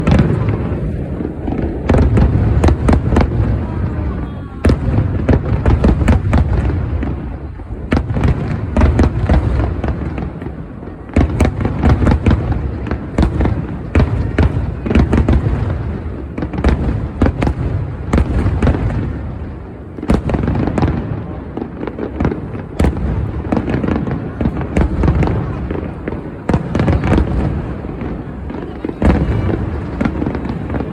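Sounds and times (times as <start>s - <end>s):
fireworks cracking: 0.0s - 30.9s.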